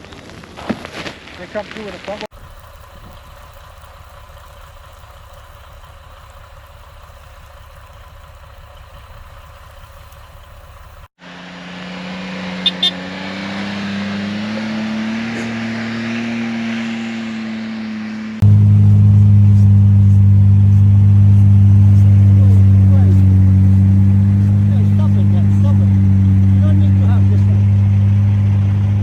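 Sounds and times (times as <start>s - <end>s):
low steady rumble: 2.3s - 11.1s, 18.4s - 29.0s
vehicle engine running: 2.3s - 16.1s, 17.6s - 29.0s.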